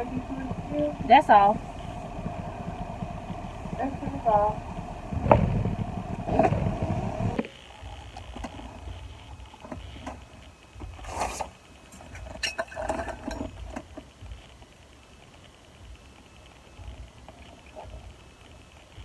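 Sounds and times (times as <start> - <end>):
car idling from inside: 0.0 - 9.0.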